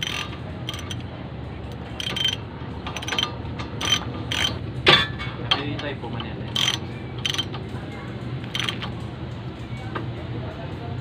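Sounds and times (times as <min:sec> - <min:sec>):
ratchet wrench clicking: 0:00.0 - 0:01.1, 0:01.7 - 0:04.6, 0:05.5 - 0:07.6, 0:08.4 - 0:09.0.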